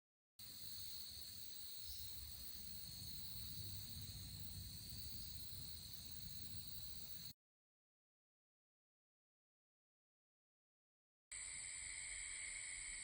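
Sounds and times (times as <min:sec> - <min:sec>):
insects chorus: 0:00.4 - 0:07.3, 0:11.4 - 0:13.0.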